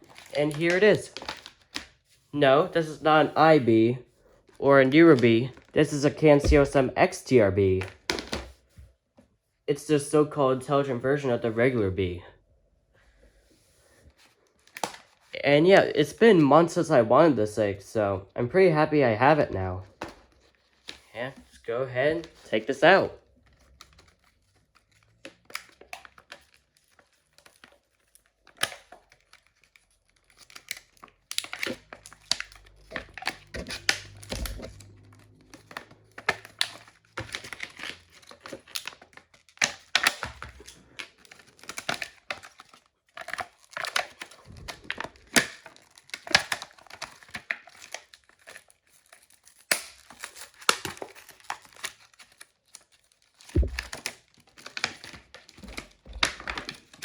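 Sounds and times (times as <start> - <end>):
packaging tearing and crinkling: 0.0 - 2.0, 5.0 - 6.9, 22.2 - 57.0
sharp knocks: 53.6 - 53.9.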